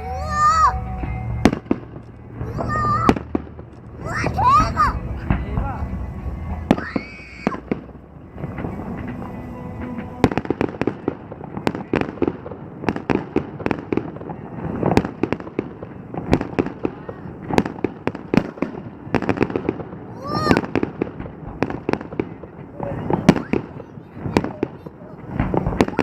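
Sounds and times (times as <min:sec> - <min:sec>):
firework bangs and crackles: 0:00.0 - 0:26.0.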